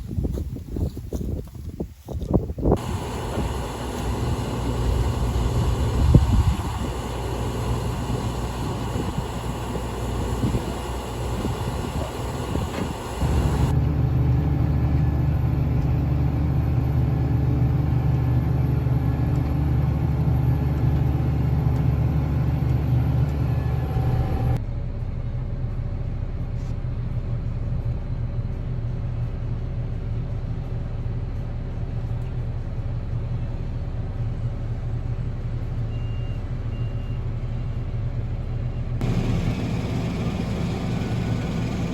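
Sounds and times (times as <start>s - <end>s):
heavy machinery engines running: 2.7s - 24.6s, 39.0s - 41.9s.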